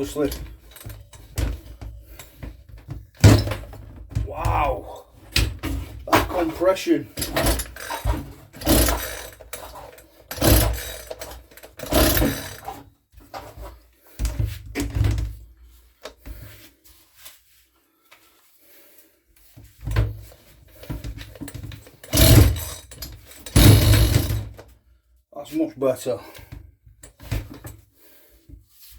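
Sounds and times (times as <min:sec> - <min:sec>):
recoil starter cranking pulls: 0:06.1 - 0:13.6, 0:21.2 - 0:24.6.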